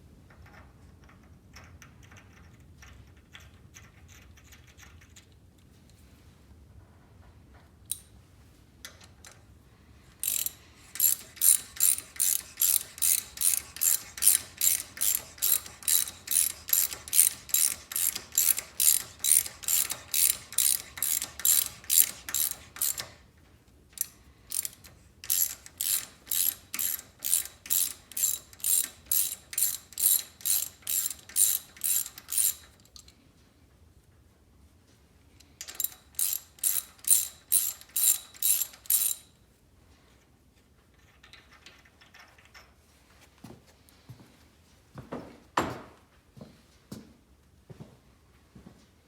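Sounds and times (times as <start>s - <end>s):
ratchet pawl clicking: 10.2s - 23.2s, 24.0s - 33.1s, 35.6s - 39.3s.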